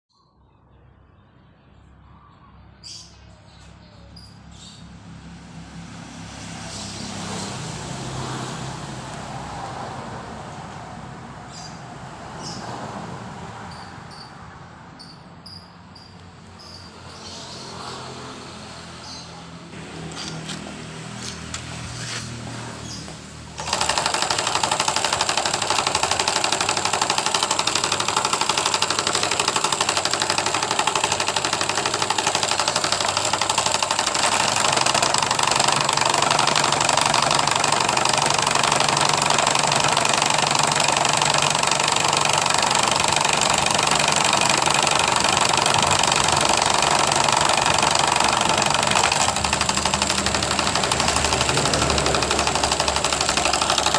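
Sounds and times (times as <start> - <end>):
electric motor saw rattling: 6.3 - 10.2, 19.0 - 53.9.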